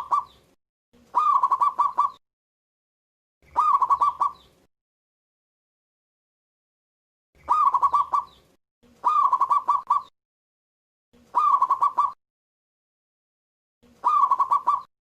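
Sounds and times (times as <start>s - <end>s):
dove cooing: 1.1s - 2.2s, 3.5s - 4.4s, 7.4s - 8.3s, 9.0s - 10.1s, 11.2s - 12.2s, 13.9s - 14.9s.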